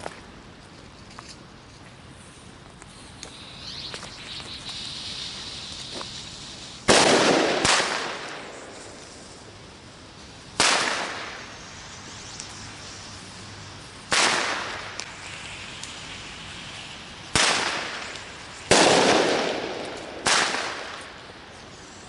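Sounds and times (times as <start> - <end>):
firework whistling hiss: 2.0 - 22.0
loud firework bangs echoing: 4.8 - 9.5, 10.5 - 11.6, 14.1 - 15.4, 17.3 - 21.2.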